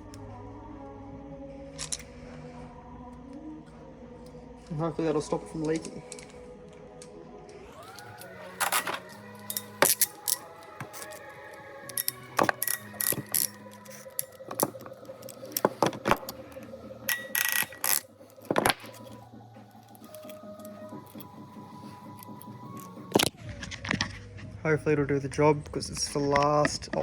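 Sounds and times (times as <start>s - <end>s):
background music: 0.0s - 27.0s
metallic clicks and clanks of tools: 1.8s - 2.1s, 5.6s - 6.4s, 7.8s - 19.2s, 19.8s - 24.2s.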